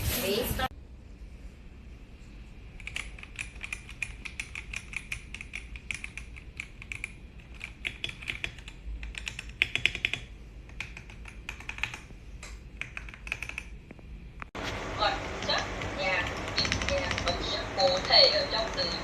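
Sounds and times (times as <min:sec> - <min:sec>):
mechanical keyboard typing: 0:02.8 - 0:12.1, 0:12.8 - 0:13.7, 0:15.4 - 0:19.0.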